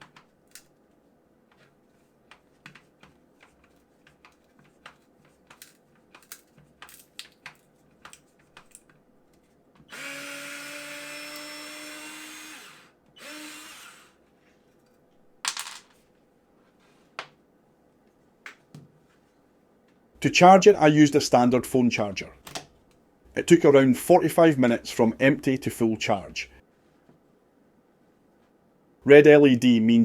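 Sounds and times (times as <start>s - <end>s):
electric screwdriver motor running: 9.9s - 14.2s.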